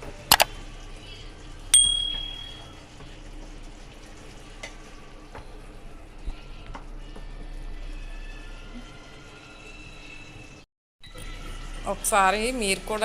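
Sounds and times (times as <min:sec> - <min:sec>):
curry sizzling in a pan: 0:00.5 - 0:10.6
metal utensil clink: 0:01.8 - 0:02.7.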